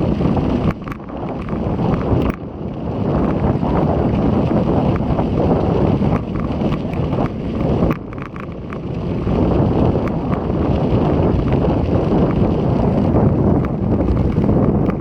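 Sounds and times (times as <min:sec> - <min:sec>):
light ticks: 0:00.0 - 0:15.0
strong wind buffeting microphone: 0:00.0 - 0:15.0.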